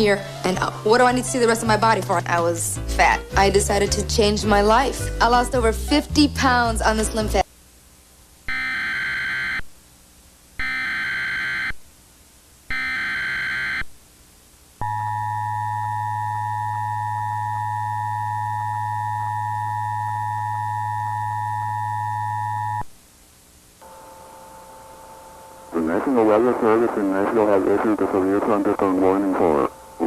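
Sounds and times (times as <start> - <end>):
low hum: 14.4 - 30.0
two-tone attention signal: 14.8 - 22.8.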